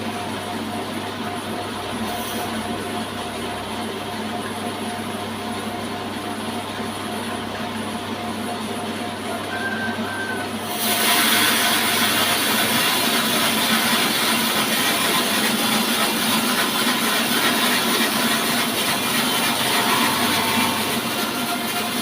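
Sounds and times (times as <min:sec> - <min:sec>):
band saw cutting wood: 0:10.8 - 0:22.0.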